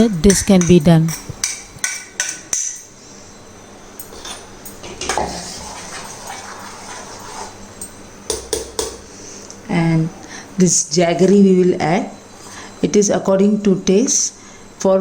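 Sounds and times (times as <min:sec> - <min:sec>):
kitchen utensils and pots clinking: 0:00.0 - 0:03.0, 0:04.0 - 0:09.0.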